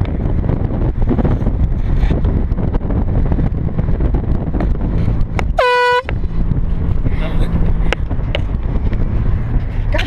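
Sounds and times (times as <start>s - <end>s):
road rumble from moving car: 0.0s - 10.0s
wind rushing over microphone: 0.0s - 10.0s
loud air horn blast: 5.6s - 6.1s.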